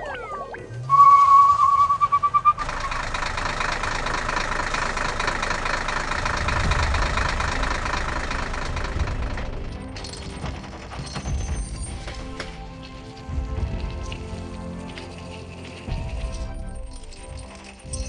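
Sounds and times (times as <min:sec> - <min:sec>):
vehicle engine sound effect: 0:01.6 - 0:11.2.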